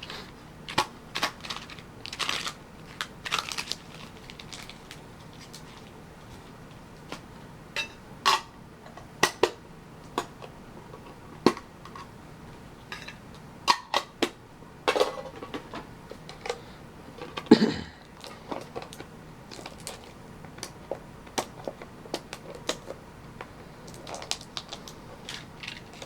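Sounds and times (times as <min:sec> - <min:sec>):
packaging rustling: 0:00.0 - 0:06.5, 0:18.1 - 0:20.2, 0:23.8 - 0:26.0.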